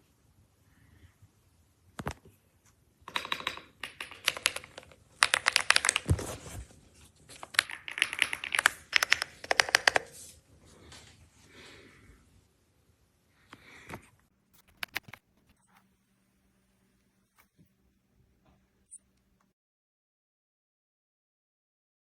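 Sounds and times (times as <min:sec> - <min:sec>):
mechanical keyboard typing: 0:03.1 - 0:06.3, 0:07.4 - 0:10.2.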